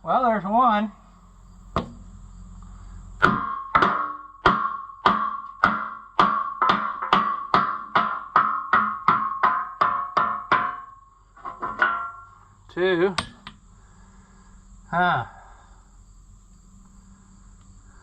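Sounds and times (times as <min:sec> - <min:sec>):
hammer striking steel wheel: 0:01.7 - 0:02.1, 0:03.2 - 0:12.5, 0:13.1 - 0:13.6.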